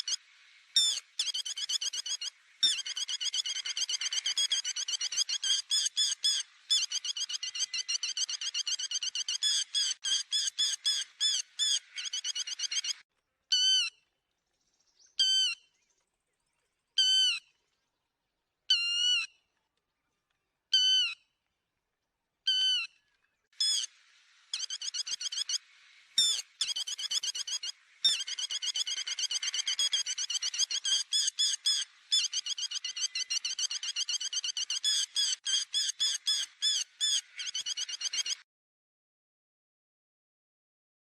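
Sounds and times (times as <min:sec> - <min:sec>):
lapwing calls: 0:00.8 - 0:13.9, 0:23.6 - 0:23.9, 0:24.5 - 0:25.6, 0:26.2 - 0:38.4.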